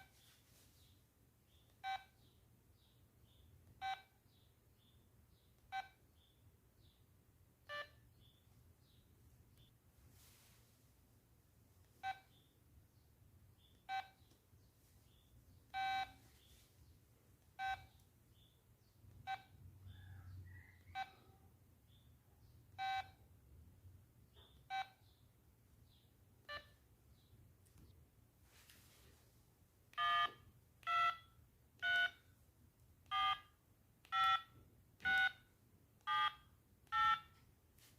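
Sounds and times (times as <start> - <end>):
phone keypad beeps: 1.8 - 2.2, 3.8 - 4.1, 5.7 - 6.0, 7.7 - 8.0, 12.0 - 12.4, 13.8 - 14.3, 15.7 - 16.2, 17.6 - 18.0, 20.8 - 21.2, 22.8 - 23.2, 24.6 - 25.1, 26.5 - 26.8, 30.0 - 32.3, 33.1 - 37.4.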